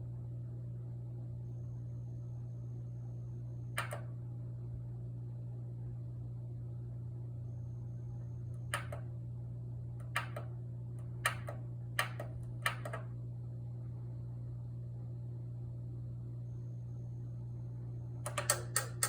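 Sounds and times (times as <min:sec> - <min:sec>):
heater double clicks: 0:03.8 - 0:04.1, 0:08.7 - 0:09.1, 0:10.0 - 0:10.5, 0:11.1 - 0:13.1.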